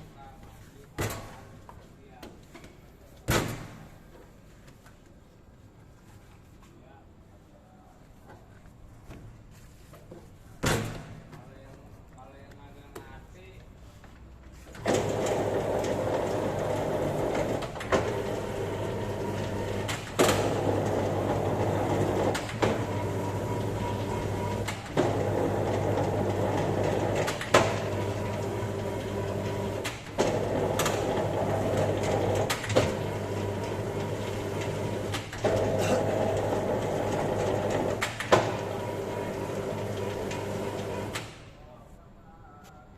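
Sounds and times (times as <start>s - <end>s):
dough sheeter motor humming: 14.8s - 41.2s.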